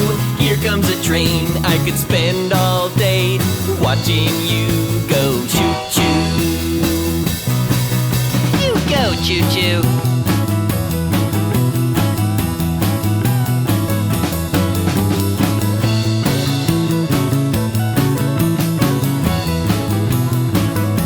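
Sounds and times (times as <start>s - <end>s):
instrumental rock music: 0.0s - 21.0s.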